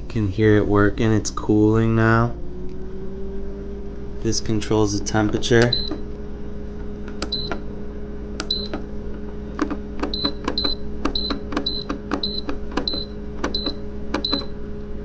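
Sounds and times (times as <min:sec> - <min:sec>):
fridge cooling unit humming: 0:00.0 - 0:02.3, 0:04.1 - 0:15.0
buttons clicking: 0:05.6 - 0:06.0, 0:07.1 - 0:07.6, 0:08.4 - 0:08.9, 0:09.6 - 0:14.5.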